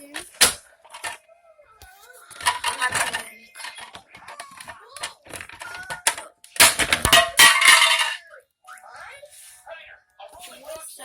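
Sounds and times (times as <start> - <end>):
small hard pieces clattering: 2.3 - 8.2.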